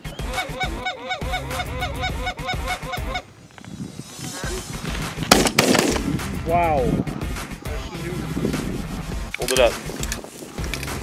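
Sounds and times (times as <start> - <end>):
geese honking: 0.0 - 3.4.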